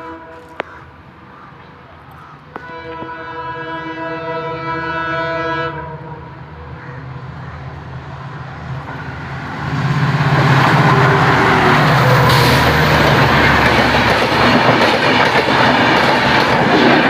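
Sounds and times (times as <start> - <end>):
locomotive horn chord: 0.0 - 0.6, 2.6 - 6.7
train passing at speed: 0.0 - 17.0.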